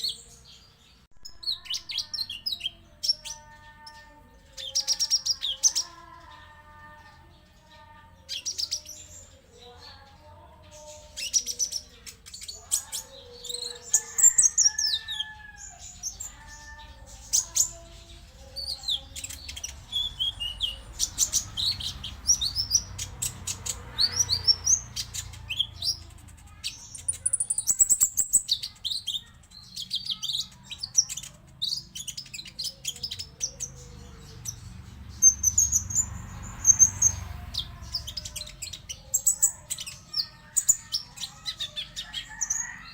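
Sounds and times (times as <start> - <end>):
bird chirping and trilling: 0.0 - 42.9.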